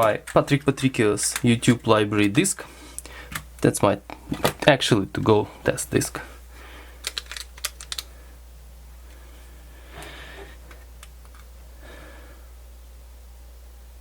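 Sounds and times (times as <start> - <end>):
low steady hum: 0.0 - 14.0
small plastic clicks: 7.0 - 8.1.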